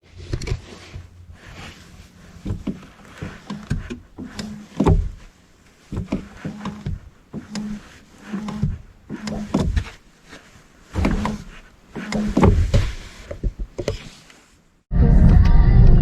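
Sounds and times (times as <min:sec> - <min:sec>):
clutch pedal clunking: 0:02.4 - 0:10.0, 0:10.9 - 0:14.0.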